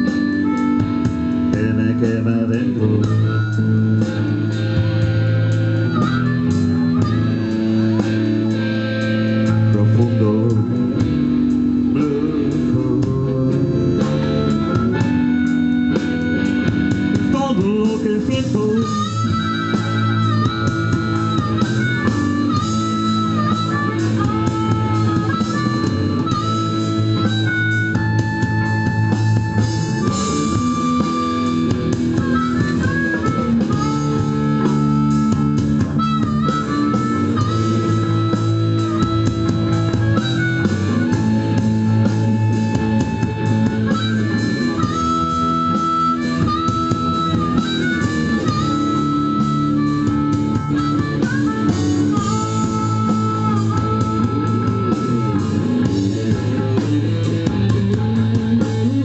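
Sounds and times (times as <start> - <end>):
blues guitar accompaniment: 0.0 - 59.0
harmonica solo: 0.0 - 59.0.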